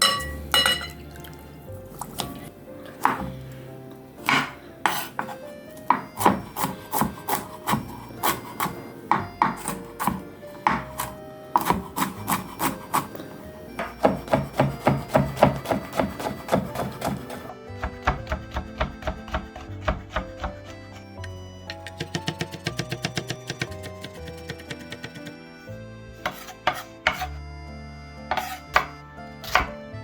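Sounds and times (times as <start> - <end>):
knife chopping on wooden board: 3.0 - 3.2, 4.2 - 13.2, 13.8 - 21.0, 21.7 - 25.4, 26.2 - 27.4, 28.3 - 29.8.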